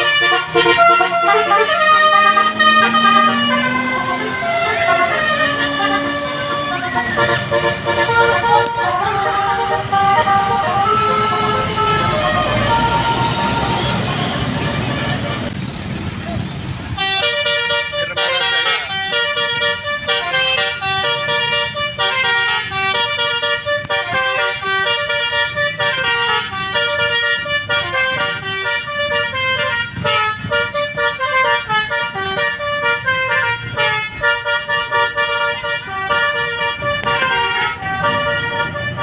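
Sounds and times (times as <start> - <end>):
musical air horn melody: 0.0 - 15.6, 16.9 - 39.0.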